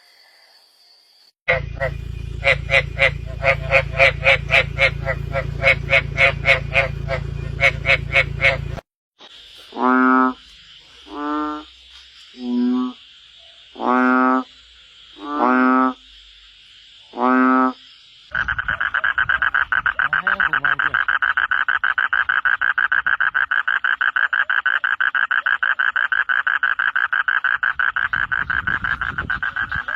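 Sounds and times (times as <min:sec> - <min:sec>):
deep frog croaks: 0:01.5 - 0:08.8, 0:09.7 - 0:11.7, 0:12.4 - 0:16.1, 0:17.0 - 0:29.9
fast-pulsing frog chorus: 0:01.5 - 0:08.8, 0:17.1 - 0:29.9
steady high hum: 0:01.5 - 0:08.8.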